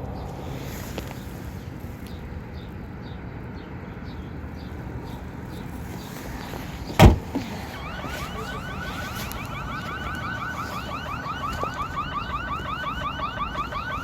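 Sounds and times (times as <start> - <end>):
outdoor rumble: 0.0 - 14.0
loud thump: 7.0 - 7.4.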